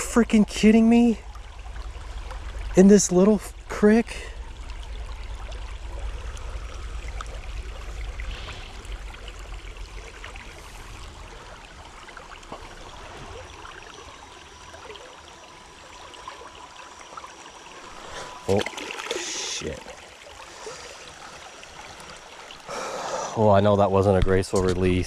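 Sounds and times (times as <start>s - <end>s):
creek running: 0.0s - 25.0s
low rumble: 1.2s - 13.8s.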